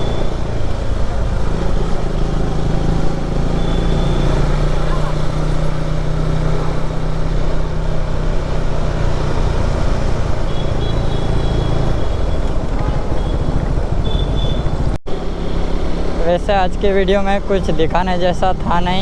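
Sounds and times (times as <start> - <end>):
motorcycle engine running: 0.0 - 19.0
wind rush on microphone: 12.2 - 15.0.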